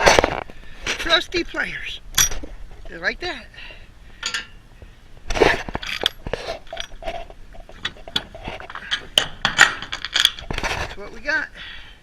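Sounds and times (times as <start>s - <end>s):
metallic clinks and scrapes: 4.2s - 4.6s, 5.3s - 11.1s.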